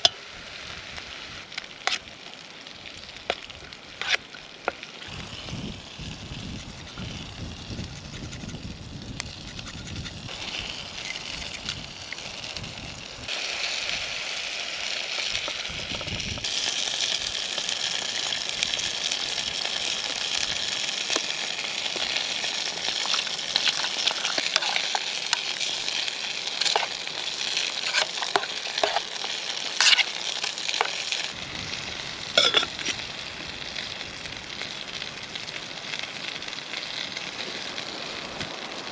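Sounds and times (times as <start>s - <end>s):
crackles and pops: 0.0s - 38.9s
food sizzling in a pan: 0.0s - 38.9s.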